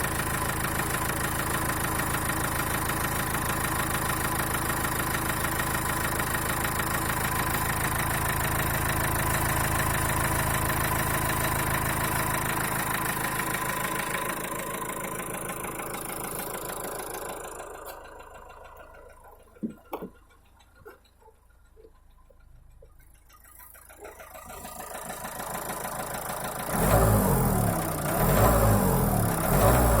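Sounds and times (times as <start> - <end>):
diesel engine idling: 0.0 - 30.0
fuel injector knocking: 18.7 - 24.8.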